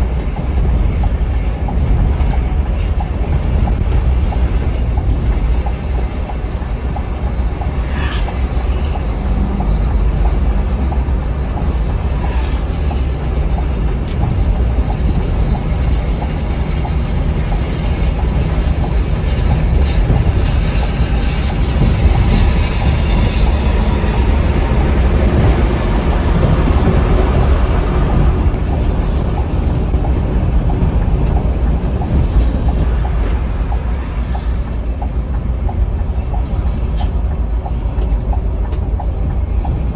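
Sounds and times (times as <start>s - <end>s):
coach engine and road drone: 0.0s - 39.9s.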